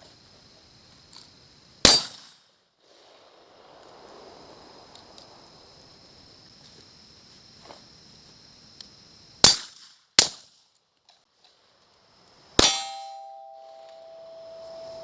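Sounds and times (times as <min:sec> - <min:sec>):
steel target ringing: 0:12.6 - 0:15.0.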